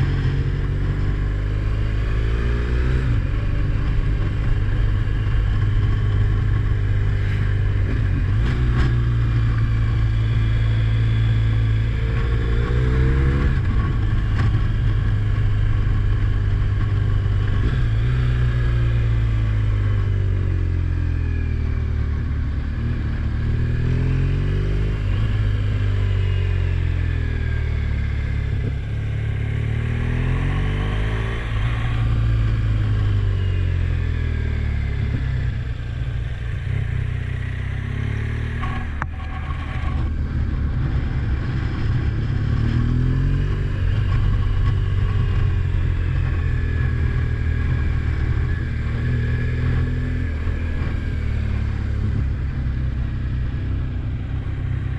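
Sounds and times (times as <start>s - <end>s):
vehicle engine revving: 22.2s - 53.6s.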